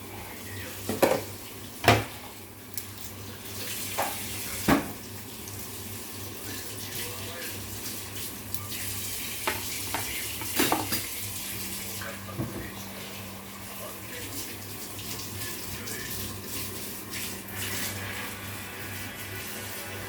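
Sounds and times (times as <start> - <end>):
dishes clinking: 0.9 - 2.1, 9.5 - 11.1
tap water running into sink: 3.6 - 12.8.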